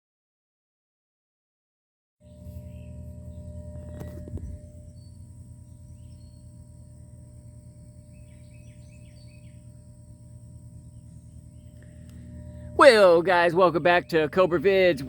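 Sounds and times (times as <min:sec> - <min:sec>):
faint bird chirps: 0:02.2 - 0:06.9, 0:07.7 - 0:10.0
low background hum: 0:02.2 - 0:15.0.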